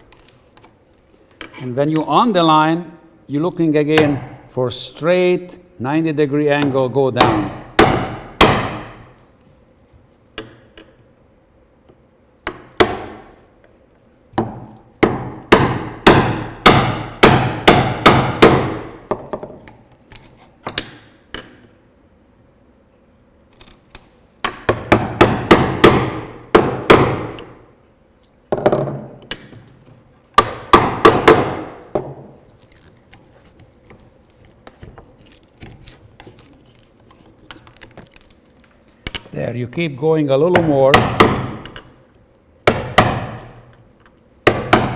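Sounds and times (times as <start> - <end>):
mallet striking chisel into wood: 6.6 - 9.2, 12.4 - 13.3, 14.4 - 19.5, 24.4 - 27.6, 30.4 - 32.3, 40.5 - 41.8, 42.6 - 43.7, 44.4 - 44.9.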